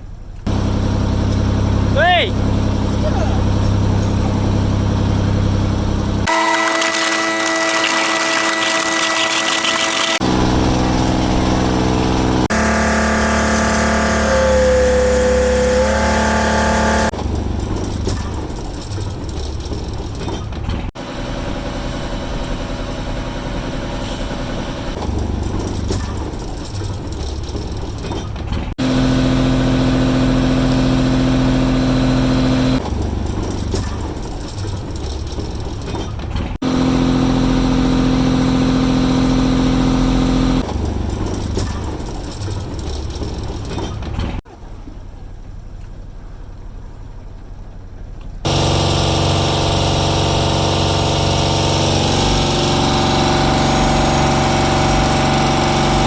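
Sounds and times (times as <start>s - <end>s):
boat engine running: 0.0s - 56.0s.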